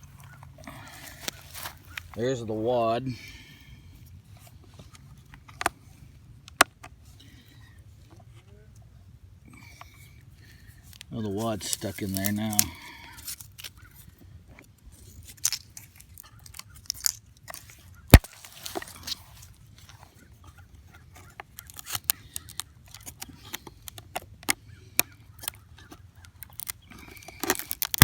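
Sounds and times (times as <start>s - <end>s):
plastic parts clicking and rattling: 10.9s - 20.0s, 21.1s - 28.0s.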